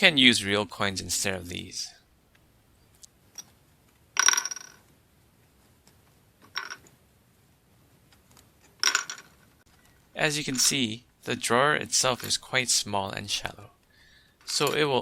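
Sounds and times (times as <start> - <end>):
coins clinking into plastic tray: 8.8 - 9.4.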